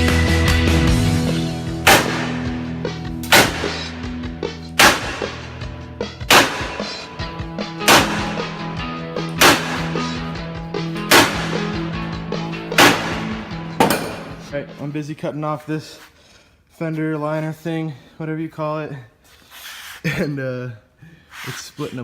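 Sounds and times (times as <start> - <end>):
background music with held chords: 0.0 - 15.0
loud sharp bangs: 1.8 - 4.2, 4.8 - 7.1, 7.8 - 8.6, 9.3 - 10.4, 11.0 - 12.0, 12.7 - 14.5.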